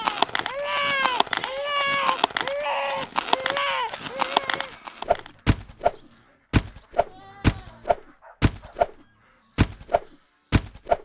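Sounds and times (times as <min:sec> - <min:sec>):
faint wail: 0:00.0 - 0:05.0, 0:07.0 - 0:08.1
heavy ringing thuds: 0:06.6 - 0:06.9, 0:08.4 - 0:08.8.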